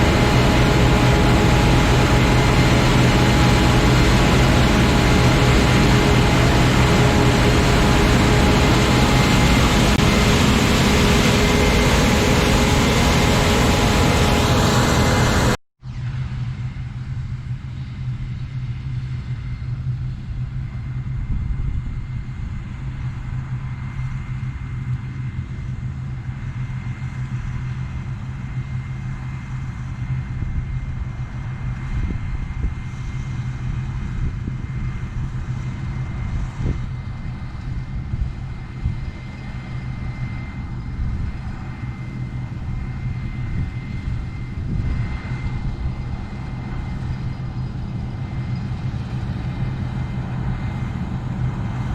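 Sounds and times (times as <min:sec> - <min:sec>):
machinery high whine: 0:00.0 - 0:15.6, 0:32.8 - 0:51.9
combine harvester engine drone: 0:00.0 - 0:51.9.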